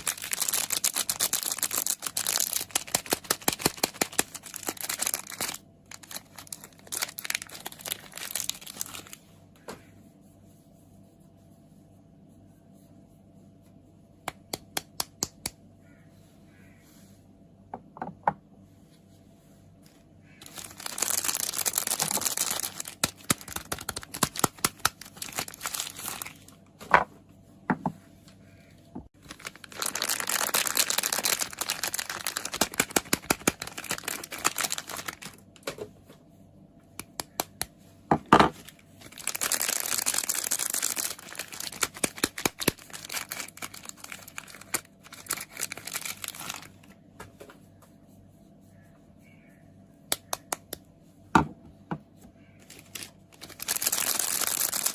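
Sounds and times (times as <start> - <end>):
packaging crinkling and tearing: 0.0 - 9.2, 20.4 - 26.6, 29.2 - 35.6, 38.6 - 47.0, 52.6 - 54.9.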